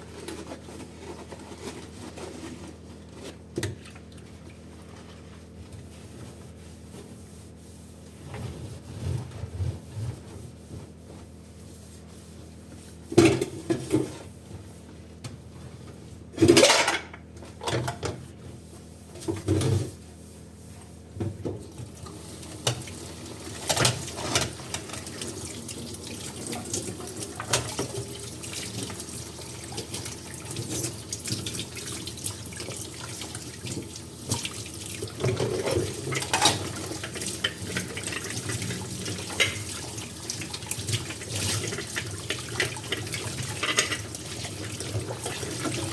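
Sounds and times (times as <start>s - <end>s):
dishes clinking in a sink: 16.4s - 18.2s, 41.8s - 44.2s.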